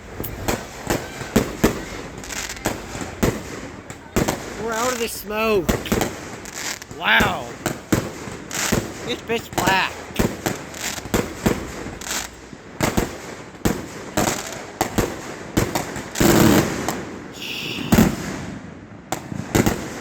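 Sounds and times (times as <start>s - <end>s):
fireworks bangs: 0.0s - 20.0s
heavy fireworks booms: 0.0s - 20.0s.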